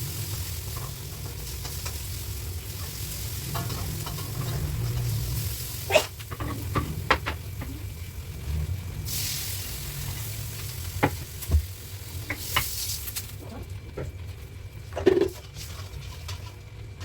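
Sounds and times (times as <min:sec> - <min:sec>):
chicken sizzling in a pan: 0:00.0 - 0:13.4.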